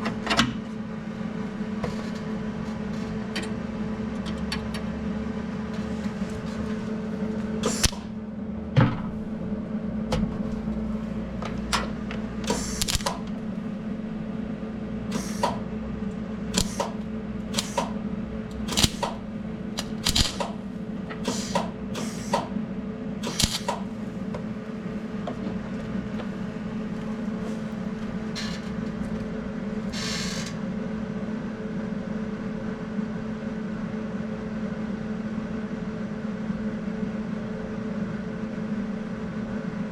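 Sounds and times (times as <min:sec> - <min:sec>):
welder machine hum: 0:00.0 - 0:32.8
welding arc crackle: 0:07.6 - 0:08.2, 0:12.4 - 0:13.4, 0:16.5 - 0:18.0, 0:18.6 - 0:20.7, 0:23.2 - 0:23.9
sharp clicks: 0:12.5 - 0:13.2, 0:18.7 - 0:19.2, 0:19.8 - 0:20.6, 0:23.2 - 0:23.8.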